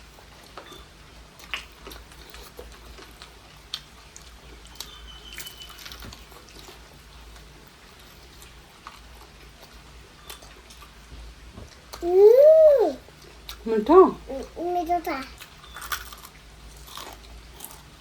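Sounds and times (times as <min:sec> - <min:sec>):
low background hum: 0:00.0 - 0:18.0
person chewing: 0:15.4 - 0:17.9.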